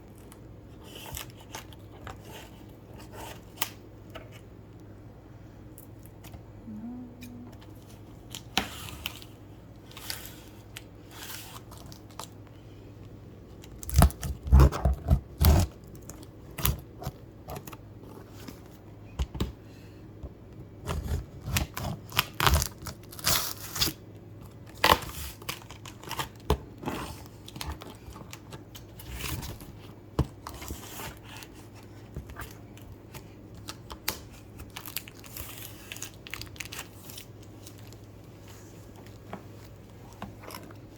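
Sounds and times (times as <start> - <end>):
packaging tearing and crinkling: 13.6 - 17.8, 20.9 - 24.0, 33.6 - 38.0.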